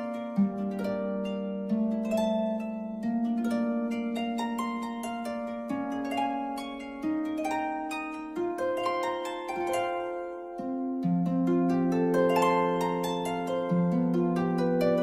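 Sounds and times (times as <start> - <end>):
plucked melody: 0.0 - 15.0.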